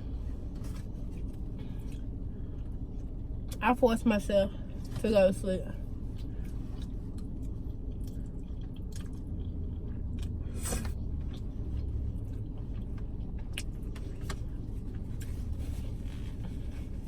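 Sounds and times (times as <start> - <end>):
car hum: 0.0 - 17.0
person chewing pasta: 6.2 - 15.4.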